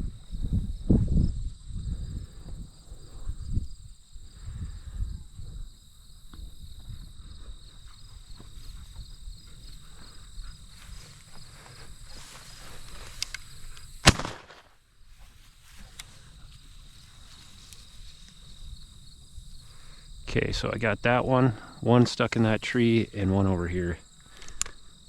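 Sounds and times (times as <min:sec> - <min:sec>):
insects droning: 0:00.0 - 0:25.0
shotgun shot: 0:14.0 - 0:14.7.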